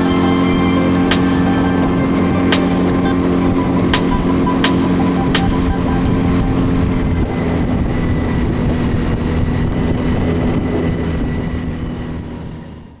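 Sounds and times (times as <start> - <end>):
wind: 7.2 - 13.0.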